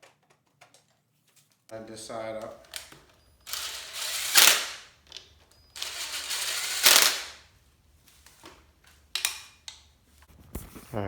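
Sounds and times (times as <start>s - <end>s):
impact wrench rattling: 2.5s - 5.2s, 5.8s - 7.4s.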